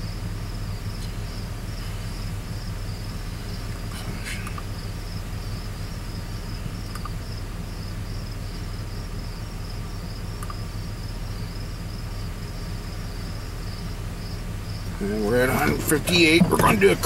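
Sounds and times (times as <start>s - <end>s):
crickets chirping: 0.0s - 17.0s
truck engine idling: 0.0s - 17.0s
faint double clicks: 3.9s - 4.7s, 6.9s - 7.2s, 10.4s - 10.6s.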